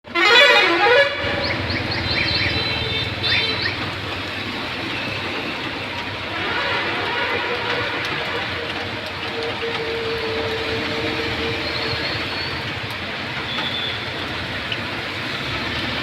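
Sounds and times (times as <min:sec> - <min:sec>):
horn: 0:00.1 - 0:03.9, 0:05.9 - 0:12.7
rain hiss: 0:01.2 - 0:16.0.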